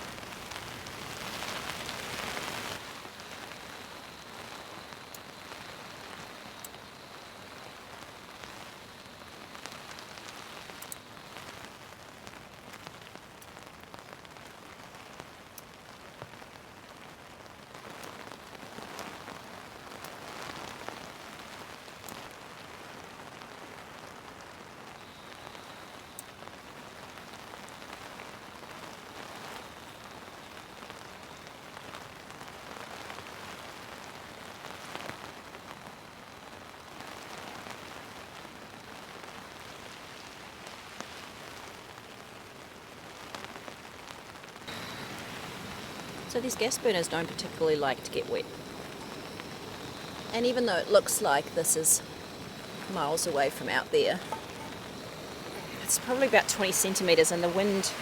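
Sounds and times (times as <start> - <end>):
heavy rain falling: 0.0 - 58.0
sharp raindrop impacts ticking: 44.7 - 58.0.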